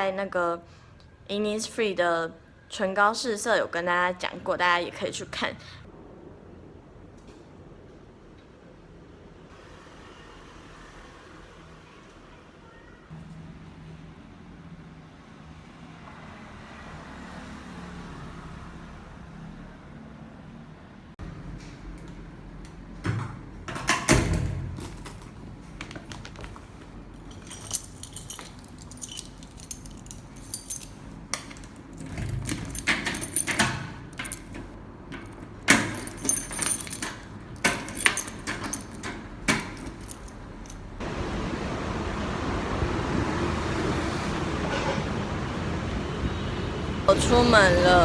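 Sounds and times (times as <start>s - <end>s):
keys jangling: 24.6s - 41.0s
vehicle rumble: 24.8s - 48.0s.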